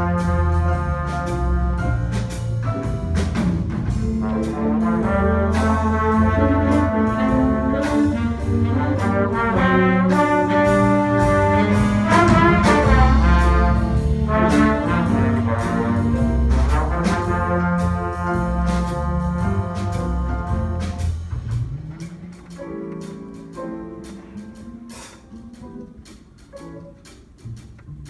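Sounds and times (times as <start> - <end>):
trumpets and trombones: 0.0 - 2.7, 3.9 - 23.0
steady drum beat: 0.0 - 28.0.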